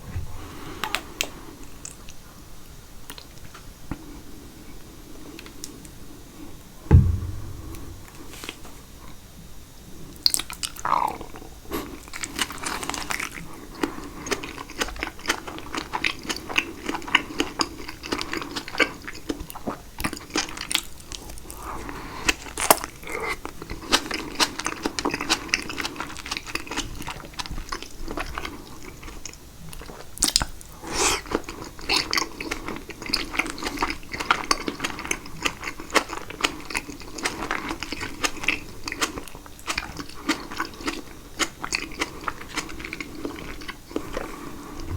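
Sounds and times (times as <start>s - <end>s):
chewing salad: 31.1s - 44.9s.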